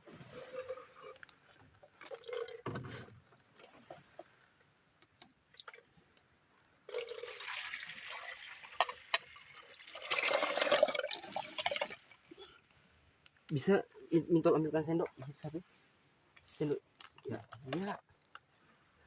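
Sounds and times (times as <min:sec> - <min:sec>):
liquid being poured: 0:00.2 - 0:01.3, 0:02.0 - 0:03.0, 0:06.9 - 0:12.3.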